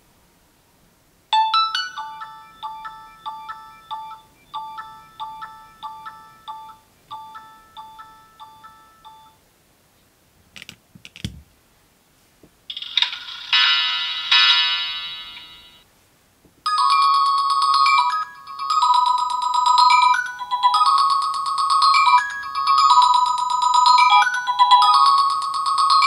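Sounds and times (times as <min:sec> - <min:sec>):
bell-like ringtone melody: 0:01.4 - 0:09.4, 0:12.7 - 0:15.8, 0:16.7 - 0:26.0
dense loud ringtone: 0:01.4 - 0:09.4, 0:12.7 - 0:15.8, 0:16.7 - 0:26.0
clicks: 0:10.6 - 0:11.4.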